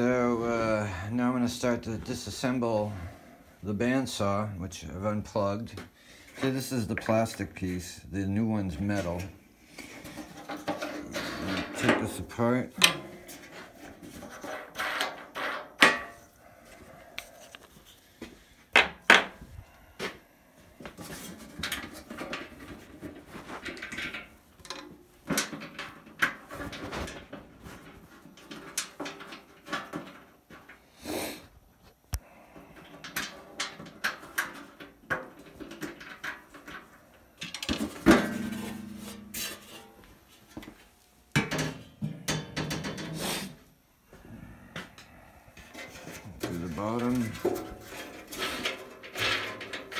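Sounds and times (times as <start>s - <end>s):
bandsaw parts clanking and rattling: 45.8s - 49.9s.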